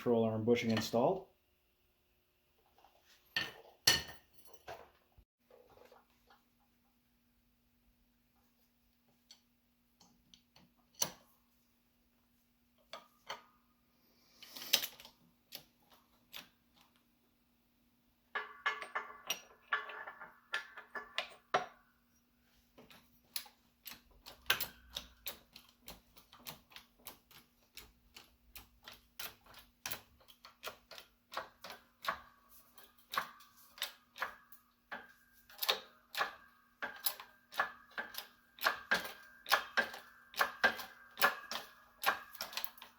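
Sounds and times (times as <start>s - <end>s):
metal tools clicking and tapping: 18.3s - 21.9s, 22.8s - 42.9s.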